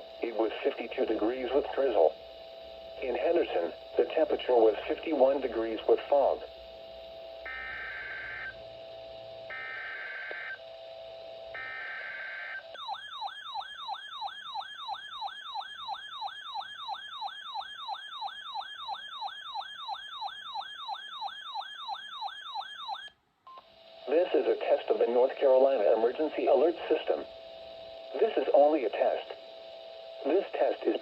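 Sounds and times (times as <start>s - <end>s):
buzzy digital data bursts: 7.4s - 8.6s, 9.4s - 10.6s.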